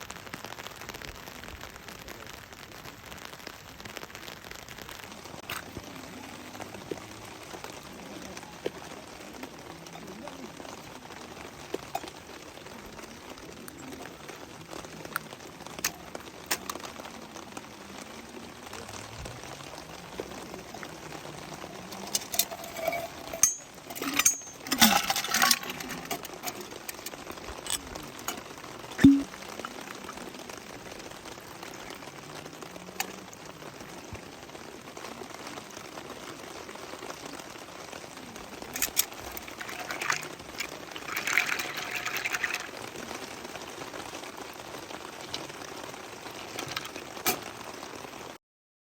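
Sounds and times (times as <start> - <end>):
steady rain hiss: 0.0 - 48.4
glassware clinking and knocking: 21.9 - 27.1, 29.0 - 29.3
clattering: 21.9 - 27.8.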